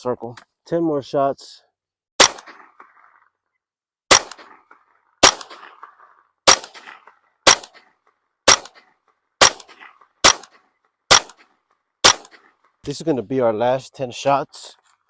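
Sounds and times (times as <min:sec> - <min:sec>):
rifle shots: 0:02.2 - 0:03.1, 0:04.1 - 0:12.7.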